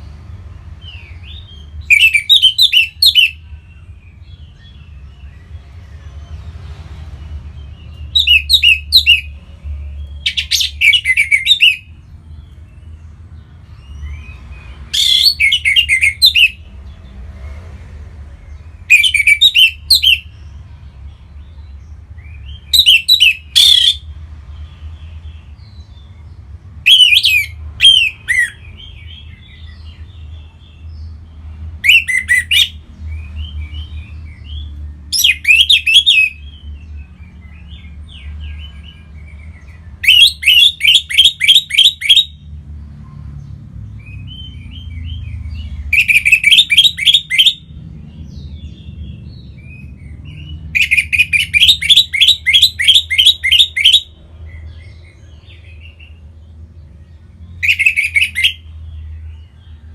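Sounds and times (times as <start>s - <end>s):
soft bird twittering: 0.0s - 17.6s, 18.4s - 59.9s
thrush whistled song: 7.6s - 9.4s, 18.9s - 20.3s, 26.8s - 28.7s, 31.8s - 34.0s, 39.3s - 42.4s, 45.9s - 47.7s, 49.6s - 54.1s, 57.6s - 58.7s.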